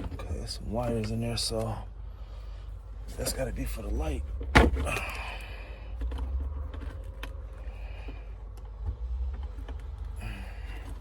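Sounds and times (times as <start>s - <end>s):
low steady rumble: 0.0s - 11.0s
sun visor clicks and rattles: 4.3s - 5.2s, 5.9s - 11.0s.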